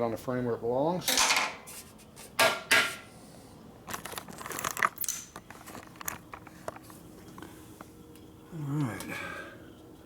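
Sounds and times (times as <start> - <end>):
metal parts and tools clinking: 3.9 - 6.4.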